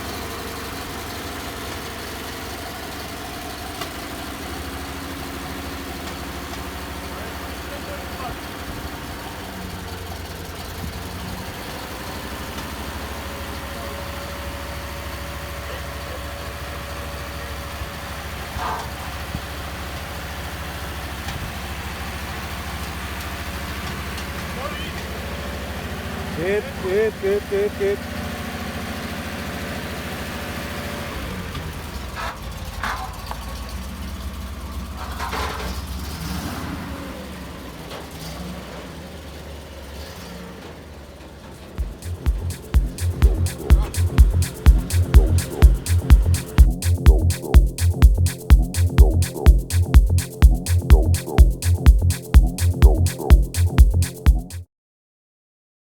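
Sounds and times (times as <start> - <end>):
car engine idling: 0.0 - 29.2.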